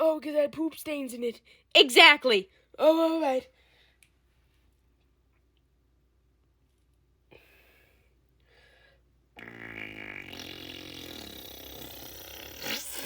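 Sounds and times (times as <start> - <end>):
rasping fart noise: 9.4 - 13.0.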